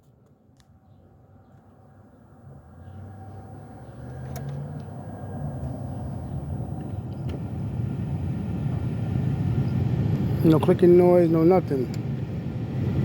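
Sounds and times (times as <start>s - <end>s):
low vehicle rumble: 0.6s - 13.0s.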